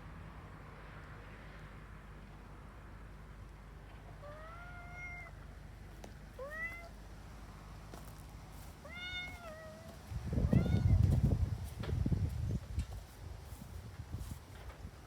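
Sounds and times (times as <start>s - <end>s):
cat meowing: 4.2s - 5.4s, 6.4s - 7.0s, 8.8s - 11.1s.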